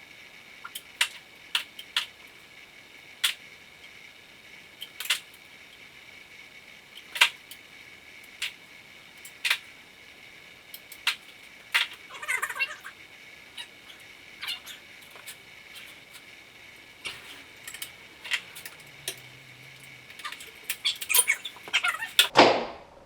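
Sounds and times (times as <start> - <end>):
faint high whine: 0.0 - 23.0
hand tools and bolts clinking: 13.6 - 22.3.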